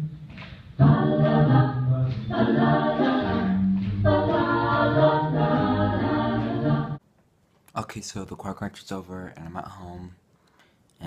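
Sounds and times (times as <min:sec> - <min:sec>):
choir singing: 0:00.8 - 0:07.0.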